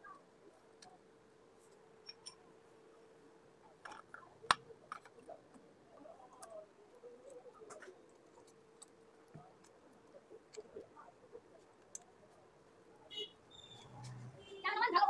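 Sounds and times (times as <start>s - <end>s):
clicks of tools and metal parts: 2.0s - 2.4s.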